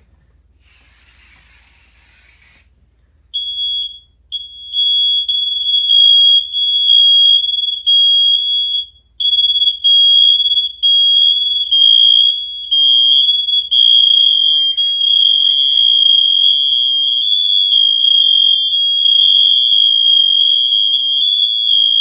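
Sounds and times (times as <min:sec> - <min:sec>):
aerosol spray hissing: 0:00.6 - 0:02.7
smoke alarms beeping: 0:03.3 - 0:22.0.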